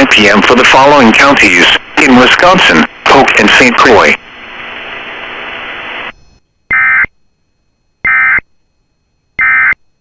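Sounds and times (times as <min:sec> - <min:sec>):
radio static: 0:00.0 - 0:07.1
data tone squawks: 0:06.7 - 0:07.1, 0:08.0 - 0:08.4, 0:09.4 - 0:09.8.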